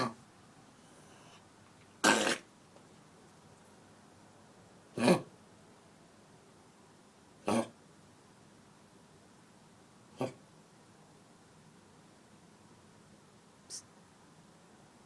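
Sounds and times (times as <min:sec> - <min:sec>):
dog coughing: 0:02.0 - 0:02.5.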